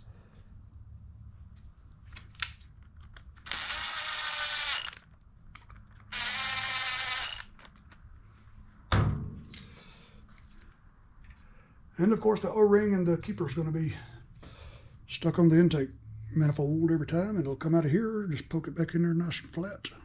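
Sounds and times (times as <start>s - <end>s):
part thunking down on bench: 8.9s - 9.5s.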